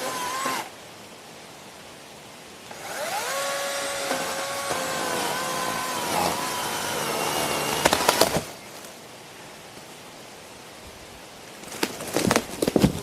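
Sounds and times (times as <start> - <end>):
electric chainsaw cutting wood: 0.0 - 0.7, 2.7 - 8.5
faint outdoor hiss: 0.0 - 13.0
wood cracking: 3.3 - 8.9.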